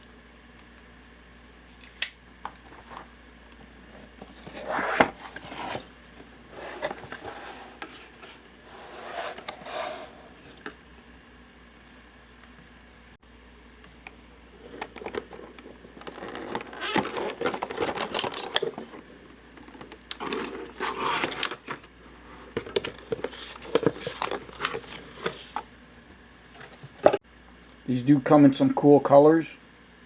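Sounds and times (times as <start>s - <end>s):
packaging rustling and crinkling: 14.6s - 19.1s.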